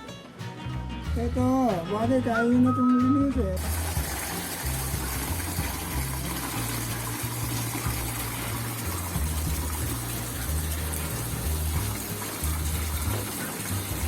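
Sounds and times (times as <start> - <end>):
running water: 3.6 - 14.0.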